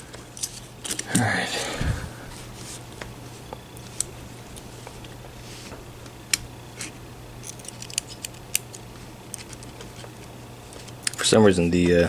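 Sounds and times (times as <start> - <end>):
steady low hum: 0.0 - 12.0
lock-picking tools clicking: 6.3 - 11.2.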